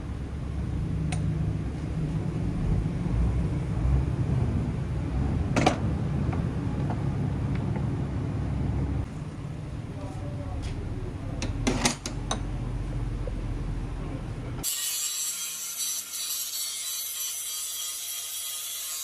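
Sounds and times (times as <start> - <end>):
machine rumbling: 0.0 - 14.6.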